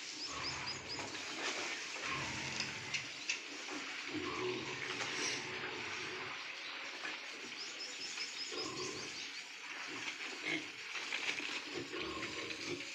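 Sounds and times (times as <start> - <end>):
constant hiss: 0.0 - 12.9
pigs grunting: 0.2 - 3.2, 3.9 - 6.5, 8.5 - 12.9.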